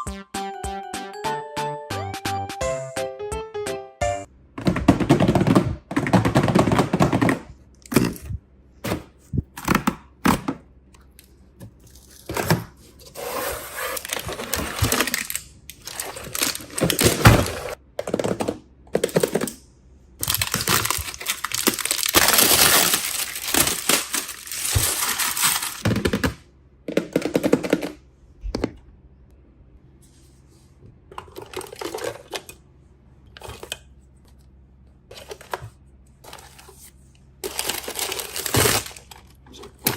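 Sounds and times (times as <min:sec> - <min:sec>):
plastic packaging crinkling: 0:13.2 - 0:17.8, 0:20.2 - 0:25.8, 0:36.2 - 0:39.9.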